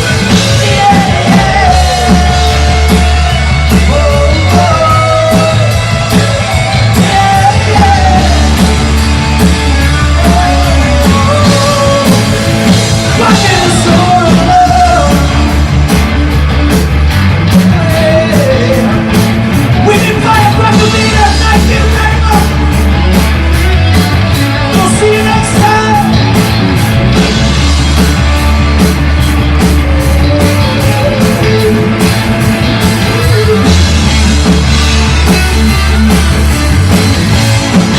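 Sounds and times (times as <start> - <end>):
person singing and shouting: 0.0 - 15.7, 17.6 - 23.2, 23.9 - 26.5, 29.6 - 34.2
live rock band: 0.0 - 37.9.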